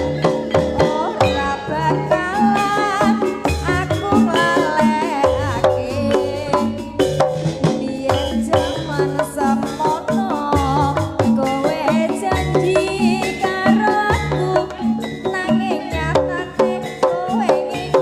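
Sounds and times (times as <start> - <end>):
sliding melody line: 0.0 - 17.8
drums and gamelan percussion: 0.0 - 18.0.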